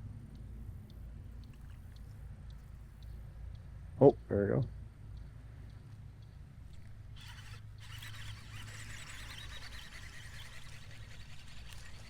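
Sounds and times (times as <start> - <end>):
low steady hum: 0.0 - 12.0
fishing reel whirring: 7.1 - 12.0.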